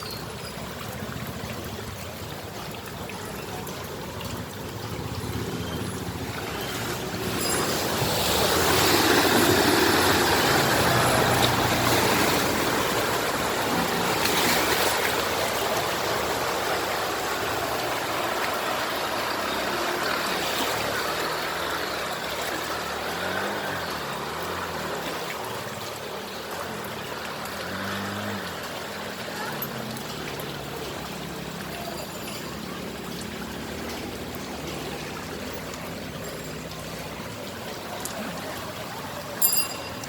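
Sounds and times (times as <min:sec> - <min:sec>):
vehicle driving through water: 0:00.0 - 0:40.0
water rushing and splashing: 0:00.0 - 0:40.0.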